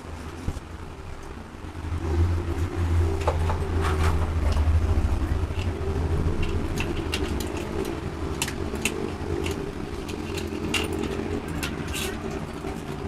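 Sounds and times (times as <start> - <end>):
low mechanical hum: 0.0 - 13.0
light metallic clicks and clinks: 5.5 - 13.0.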